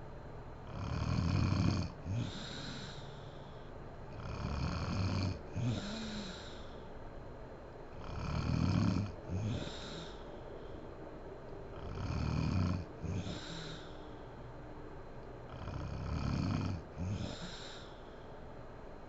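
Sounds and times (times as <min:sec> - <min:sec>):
woman snoring loudly: 0:00.7 - 0:03.0, 0:04.2 - 0:06.6, 0:08.0 - 0:10.2, 0:11.8 - 0:13.9, 0:15.5 - 0:17.8.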